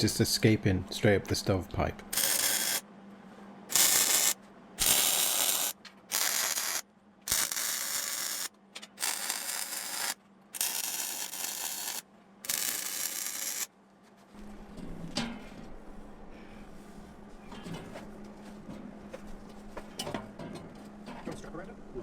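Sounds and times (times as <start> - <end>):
welder crackling: 2.1 - 2.8, 3.7 - 13.7.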